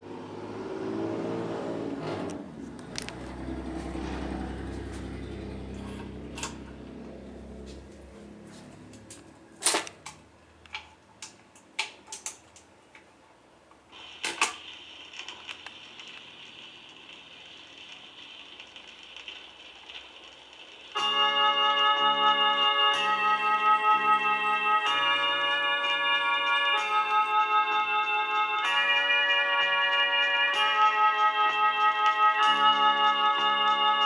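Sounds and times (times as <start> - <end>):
record player hum: 1.8 - 21.4
record surface hiss: 1.8 - 34.0.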